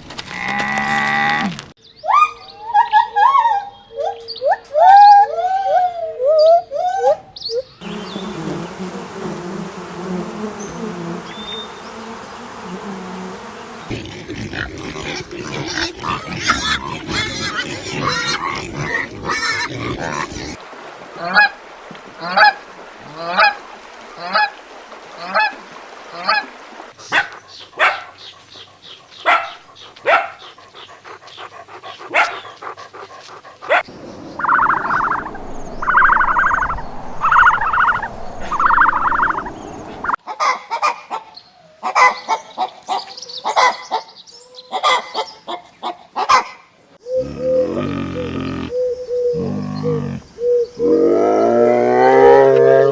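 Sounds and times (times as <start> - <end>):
waterfowl honking and calling: 21.2 - 40.6.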